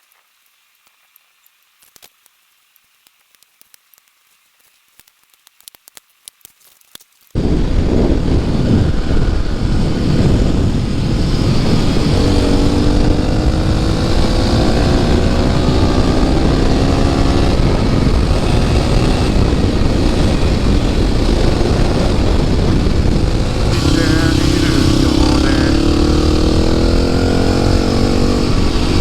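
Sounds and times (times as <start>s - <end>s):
motorcycle engine revving: 7.4s - 29.0s
wind noise on microphone: 7.4s - 29.0s.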